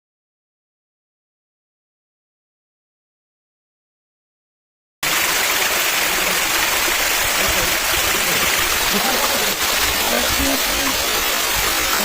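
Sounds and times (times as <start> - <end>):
rushing water: 5.0 - 12.0.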